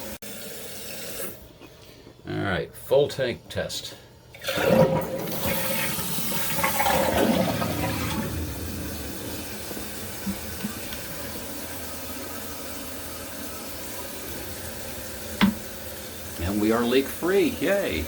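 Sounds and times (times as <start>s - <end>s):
toilet flushing: 0.0s - 1.5s, 4.3s - 18.0s
toilet tank refilling hiss: 0.0s - 1.5s, 4.3s - 18.0s.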